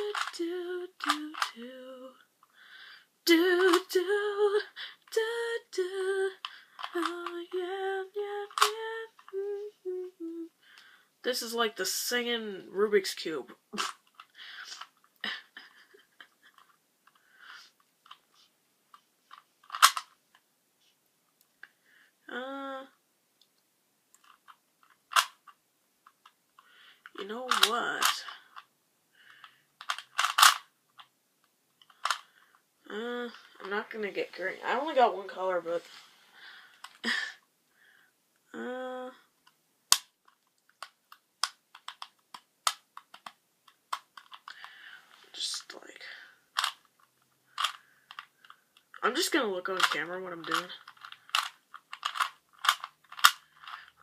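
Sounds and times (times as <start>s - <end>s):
cube clacking: 0.0s - 1.7s, 6.2s - 7.6s, 8.4s - 9.4s, 13.8s - 14.9s, 18.9s - 20.2s, 24.2s - 31.1s, 31.8s - 32.5s, 39.4s - 44.9s, 46.5s - 54.0s
rubik's cube clicking and rattling: 0.0s - 1.7s, 6.3s - 7.7s, 8.4s - 9.4s, 13.8s - 20.4s, 24.1s - 32.6s, 39.4s - 44.8s, 46.5s - 54.0s
person humming: 0.0s - 2.2s, 3.3s - 10.6s, 22.2s - 23.0s, 32.8s - 33.9s, 38.5s - 39.3s.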